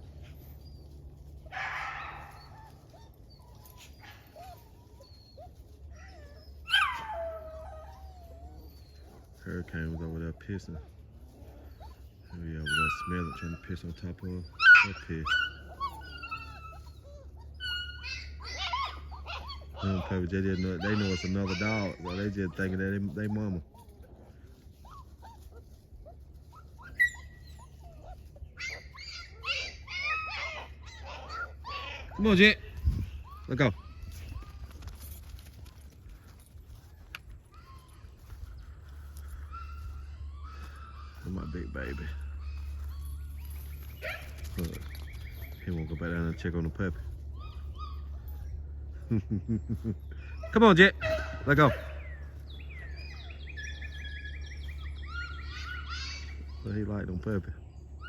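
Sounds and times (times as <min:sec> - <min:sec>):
rustling: 0:00.0 - 0:14.2, 0:18.2 - 0:50.6
puppies whimpering: 0:00.0 - 0:58.0
puppy yip: 0:01.5 - 0:09.3, 0:14.4 - 0:24.0, 0:24.8 - 0:35.9, 0:37.5 - 0:45.7, 0:46.7 - 0:48.7, 0:50.3 - 0:56.8.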